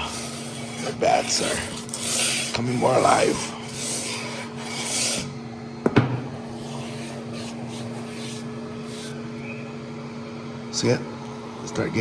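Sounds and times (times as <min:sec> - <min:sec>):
sanding bar rasping on wood: 0:00.0 - 0:05.3, 0:06.5 - 0:09.2
steady low hum: 0:00.0 - 0:12.0.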